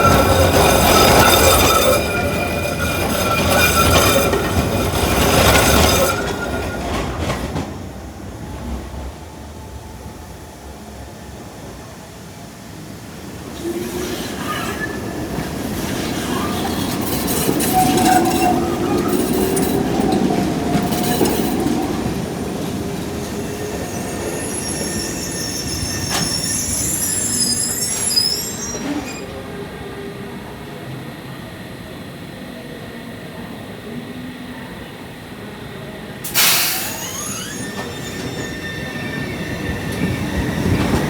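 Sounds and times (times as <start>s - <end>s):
tram wheels squealing: 0.0s - 8.3s, 12.8s - 30.0s, 36.2s - 41.0s
tram rumbling on rails: 0.0s - 41.0s.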